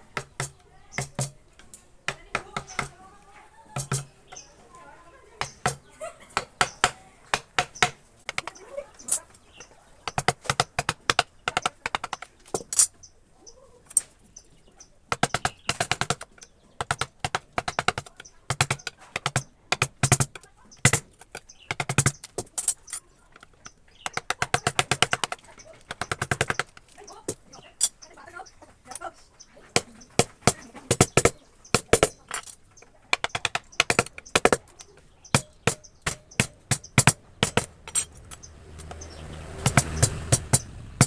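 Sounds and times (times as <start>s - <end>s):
mallet tapping chisel: 0.0s - 1.4s, 2.1s - 3.0s, 3.7s - 4.5s, 5.4s - 8.6s, 9.6s - 12.9s, 15.1s - 22.7s, 23.3s - 28.0s, 29.8s - 40.7s.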